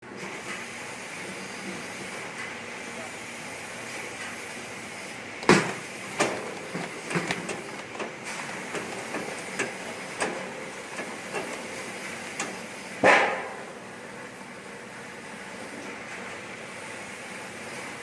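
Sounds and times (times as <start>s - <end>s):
coconuts knocking and clacking: 5.4s - 10.4s.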